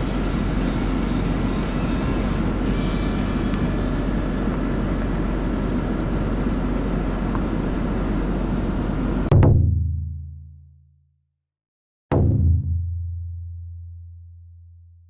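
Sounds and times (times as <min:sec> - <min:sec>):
deep booming hit: 0:00.0 - 0:04.9, 0:12.1 - 0:13.2.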